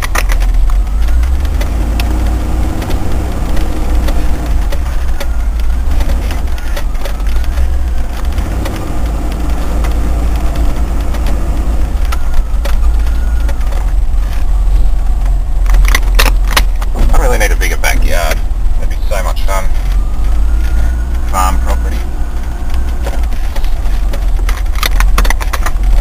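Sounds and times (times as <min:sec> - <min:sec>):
sharp clicks or knocks: 0:00.0 - 0:14.5, 0:15.1 - 0:17.1, 0:22.4 - 0:26.0
car engine rumbling: 0:00.0 - 0:26.0.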